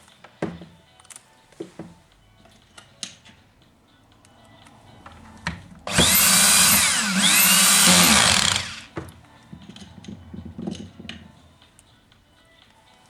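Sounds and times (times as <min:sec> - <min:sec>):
high-speed power tool running: 0:05.9 - 0:08.9.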